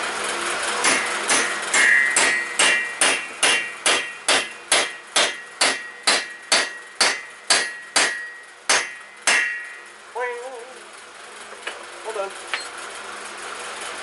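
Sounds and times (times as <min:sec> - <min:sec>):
hammer tapping metal tool: 0:00.8 - 0:09.8.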